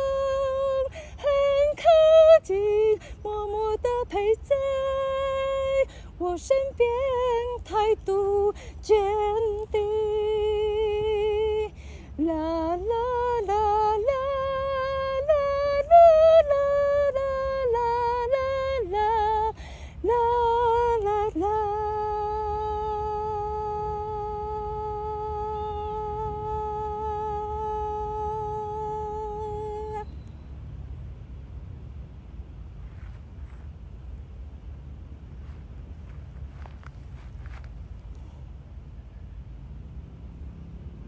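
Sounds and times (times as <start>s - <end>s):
woman singing wordless melody: 0.0s - 30.5s.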